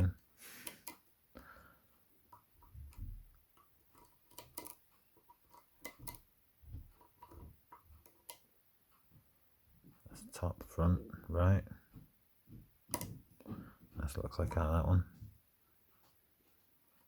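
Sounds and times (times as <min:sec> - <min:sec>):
lock pick clicking and scraping: 0:00.6 - 0:01.1, 0:02.3 - 0:06.3, 0:07.0 - 0:08.4.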